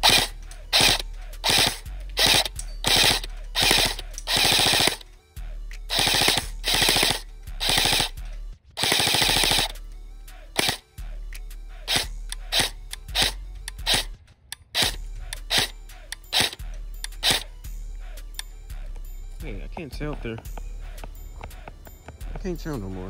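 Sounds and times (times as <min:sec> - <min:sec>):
airsoft gun firing bursts: 0:00.0 - 0:05.0, 0:05.9 - 0:08.2, 0:08.8 - 0:09.8, 0:10.6 - 0:10.8, 0:11.9 - 0:14.1, 0:14.8 - 0:15.7, 0:16.3 - 0:16.6, 0:17.2 - 0:17.5.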